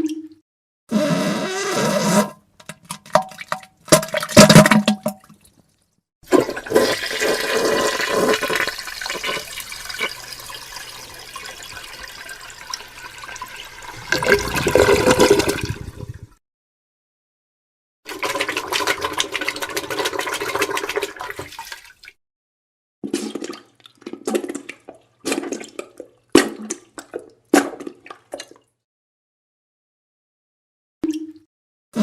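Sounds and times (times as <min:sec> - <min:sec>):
toilet flushing: 0:06.3 - 0:16.4, 0:18.1 - 0:22.0.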